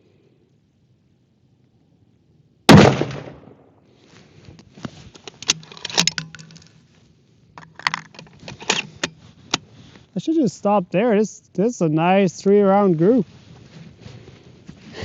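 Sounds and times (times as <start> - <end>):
rifle shot: 2.7 - 3.7
rifle handling clicks and knocks: 4.5 - 6.9, 7.6 - 9.7.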